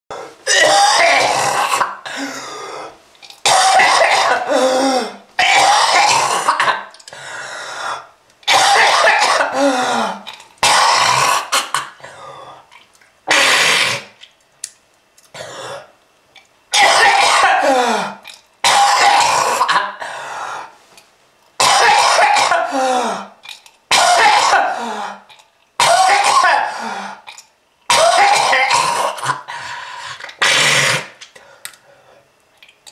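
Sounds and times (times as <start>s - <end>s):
person coughing: 0.4s - 2.6s, 3.4s - 6.9s, 8.5s - 12.4s, 16.7s - 20.1s, 21.6s - 23.3s, 23.9s - 27.2s, 27.9s - 29.5s.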